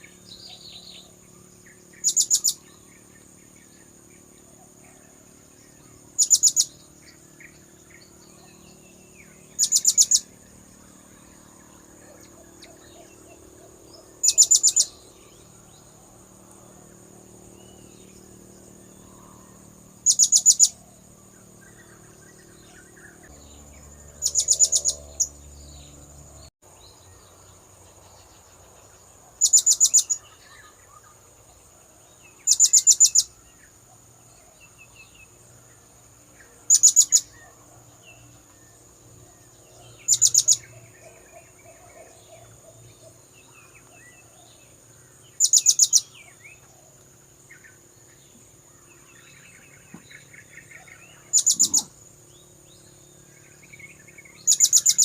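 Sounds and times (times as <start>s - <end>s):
high-pitched parrot chirps: 51.3s - 51.9s.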